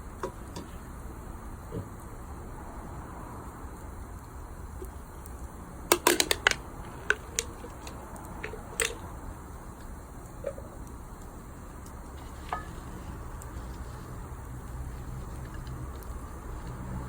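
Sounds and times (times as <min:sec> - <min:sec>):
steady low hiss: 0:00.0 - 0:17.0
wood fire crackling: 0:00.0 - 0:17.0.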